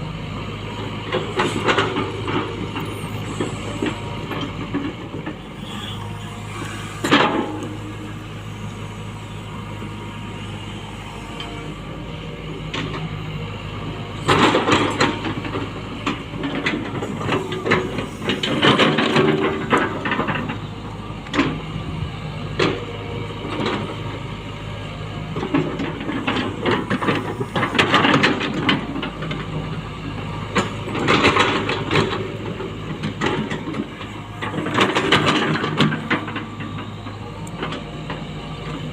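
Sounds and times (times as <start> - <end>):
excavator diesel engine: 0.0 - 38.9
metal scraping on earth: 0.6 - 13.1.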